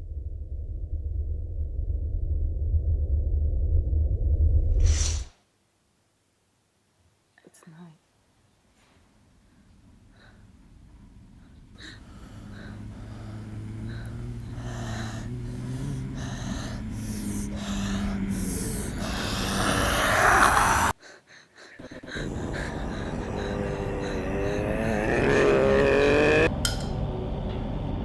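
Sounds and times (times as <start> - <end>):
low soundtrack drone: 11.2 - 21.0, 21.9 - 28.0
heavy gasping breaths: 11.3 - 26.4.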